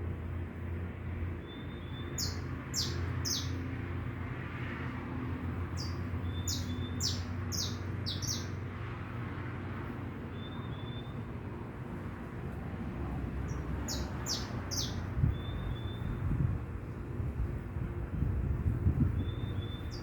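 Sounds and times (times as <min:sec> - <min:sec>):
finch singing: 0:01.4 - 0:03.6, 0:05.8 - 0:08.6, 0:10.3 - 0:11.2, 0:13.5 - 0:16.2, 0:19.1 - 0:20.0.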